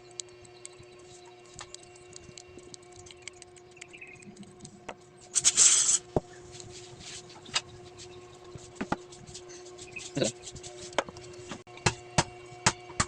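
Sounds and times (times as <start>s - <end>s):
small clicks and scratches on metal: 0.0s - 6.0s
steady low hum: 0.0s - 13.0s
loud hissing scrape: 5.3s - 6.1s.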